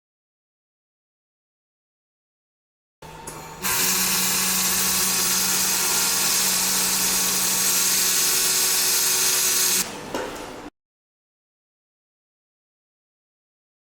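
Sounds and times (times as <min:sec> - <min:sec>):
laser welder hissing sizzle: 0:03.6 - 0:09.8.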